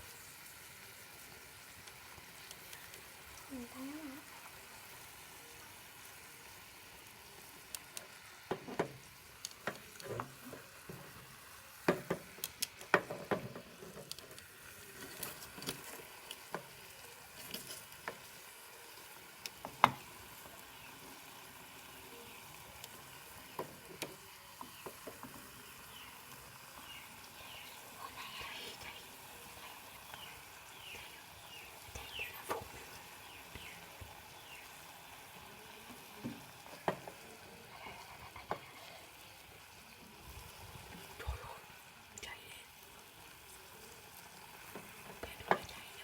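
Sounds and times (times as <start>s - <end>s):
mixture sizzling in a pot: 0.0s - 46.0s
stirring clicks and knocks: 11.8s - 16.8s.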